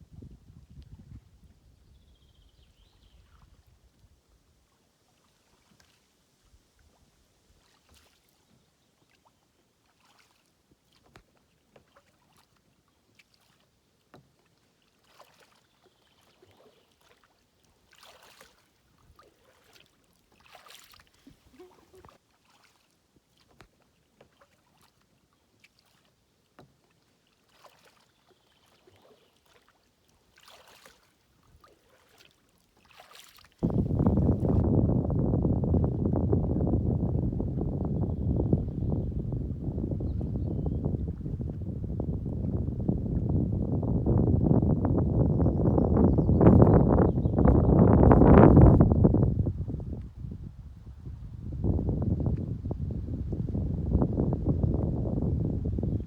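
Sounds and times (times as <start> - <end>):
kayak paddle splashing in water: 9.2 - 34.6.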